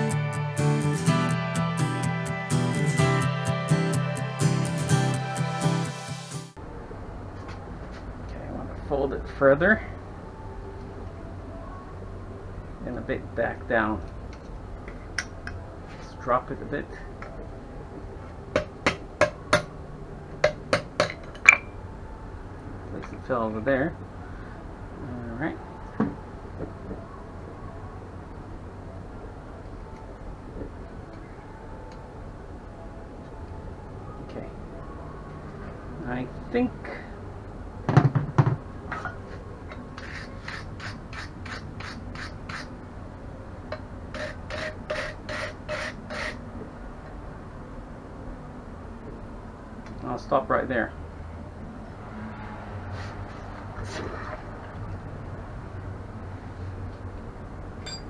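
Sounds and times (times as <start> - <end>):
hammer striking hot steel on anvil: 18.6 - 19.7, 20.4 - 21.7.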